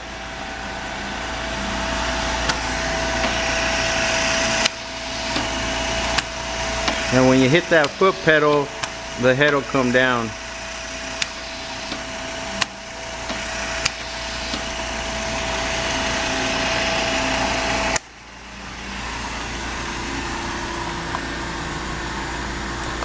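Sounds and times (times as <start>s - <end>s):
riveting machine whirring hum: 0.0s - 23.0s
machine clicks: 2.4s - 9.9s, 10.6s - 14.9s.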